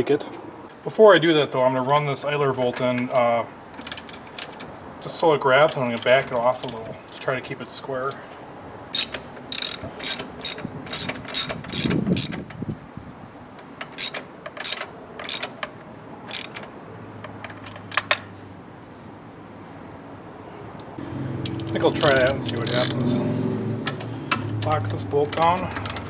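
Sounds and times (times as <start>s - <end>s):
ratchet wrench clicking: 9.0s - 12.4s, 14.0s - 15.6s, 16.3s - 16.6s, 22.0s - 23.1s.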